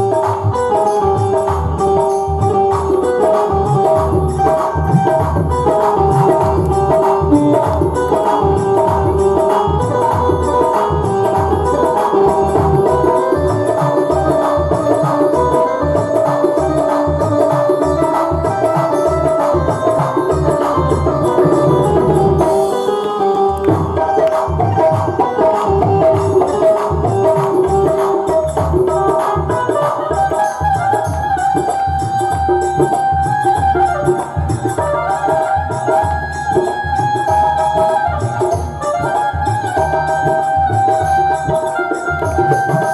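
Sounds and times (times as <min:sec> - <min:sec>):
hand drum rhythm: 0:00.0 - 0:42.9
held melody notes: 0:00.0 - 0:42.9.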